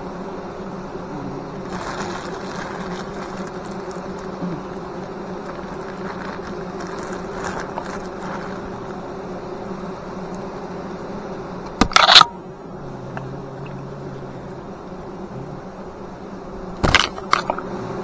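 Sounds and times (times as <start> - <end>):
bees buzzing: 0.0 - 18.0
loud crackle: 1.6 - 9.1.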